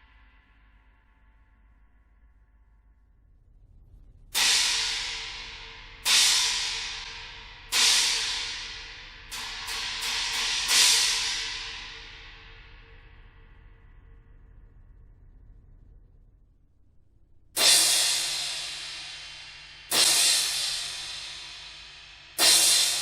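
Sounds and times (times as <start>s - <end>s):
cymbal crash: 4.4s - 13.8s, 17.6s - 23.0s.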